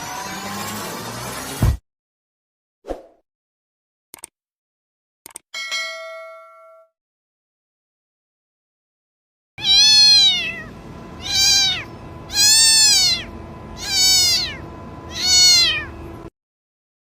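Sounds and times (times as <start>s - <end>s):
cat meowing: 9.6s - 16.0s.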